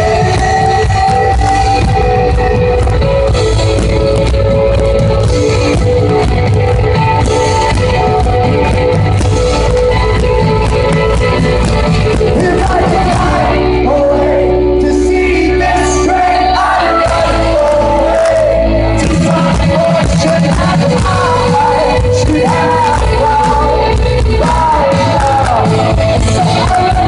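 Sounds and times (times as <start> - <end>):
live rock band with vocals: 0.0 - 27.0.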